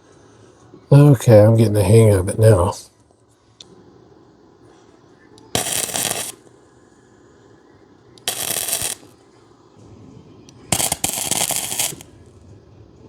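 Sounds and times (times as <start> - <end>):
welder arc crackling: 5.5 - 6.4, 8.2 - 9.2, 10.5 - 12.2.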